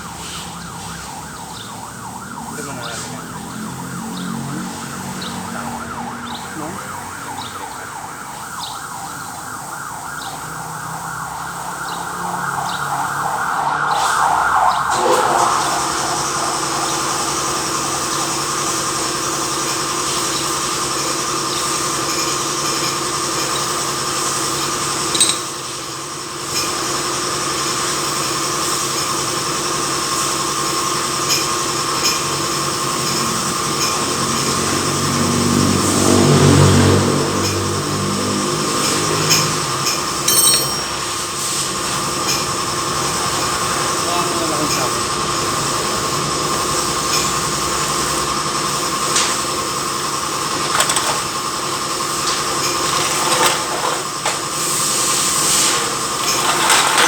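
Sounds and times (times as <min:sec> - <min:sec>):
siren wailing: 0:00.0 - 0:20.8
machine droning: 0:12.8 - 0:20.9.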